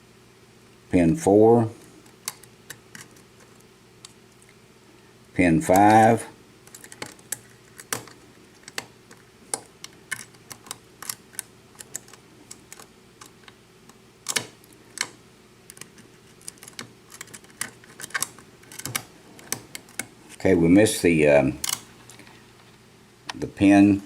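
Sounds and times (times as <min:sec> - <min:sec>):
lock pick clicking: 0:14.3 - 0:15.1.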